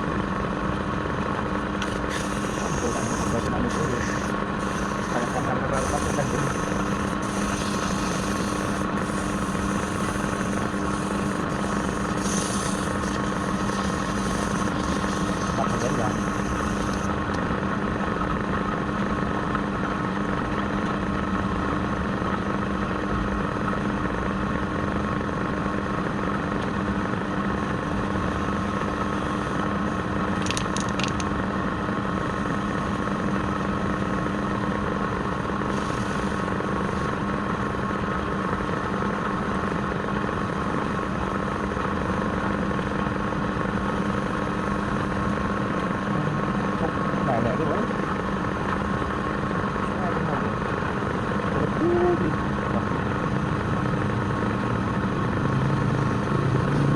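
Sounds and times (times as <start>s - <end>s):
lathe motor humming: 0.0s - 17.4s, 31.4s - 51.7s.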